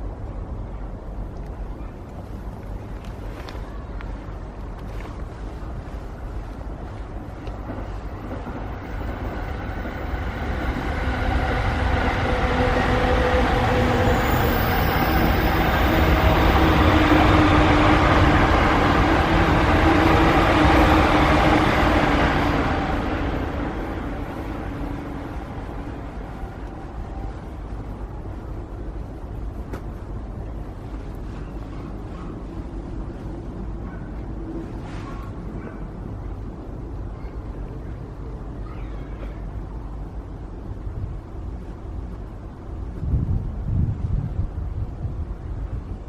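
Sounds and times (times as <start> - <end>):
low traffic rumble: 0.0 - 46.0
passing vehicle rumble: 8.7 - 26.4.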